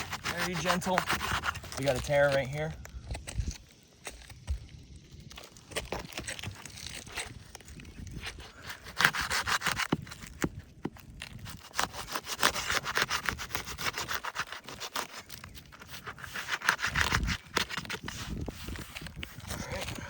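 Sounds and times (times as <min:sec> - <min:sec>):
roof shingles crackling and scraping: 0:00.0 - 0:20.0.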